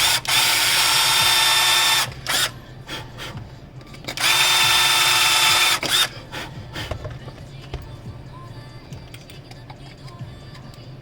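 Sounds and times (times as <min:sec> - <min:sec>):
electric drill running: 0:00.0 - 0:02.5, 0:04.2 - 0:06.1.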